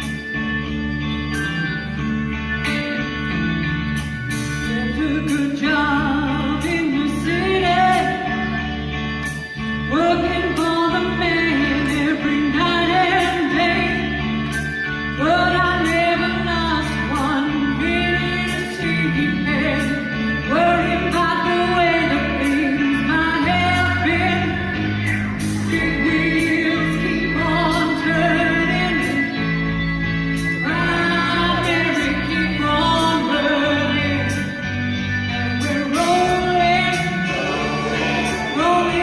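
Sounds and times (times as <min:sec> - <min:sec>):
bass line: 0:00.0 - 0:39.0
drums: 0:02.6 - 0:39.0
choir singing pop song: 0:35.6 - 0:39.0.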